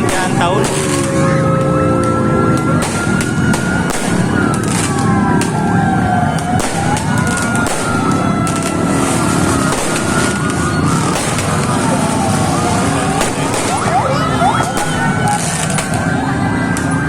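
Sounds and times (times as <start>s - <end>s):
firework bangs: 0.0s - 1.4s, 2.0s - 16.8s
ambulance sirens wailing: 0.0s - 17.0s
crowd hubbub: 0.0s - 17.0s.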